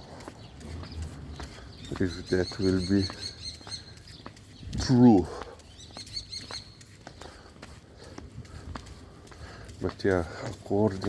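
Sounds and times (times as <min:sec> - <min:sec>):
light footsteps: 0:00.0 - 0:11.0
small bird chirping: 0:00.2 - 0:07.0.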